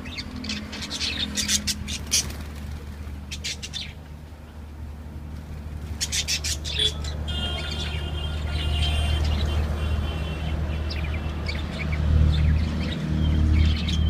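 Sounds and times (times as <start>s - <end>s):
lovebirds chirping: 5.8s - 14.0s.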